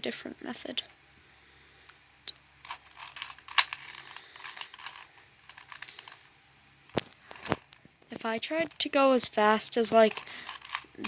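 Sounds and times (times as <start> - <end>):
puzzle cube plastic clicks: 2.3 - 6.3, 9.7 - 11.0.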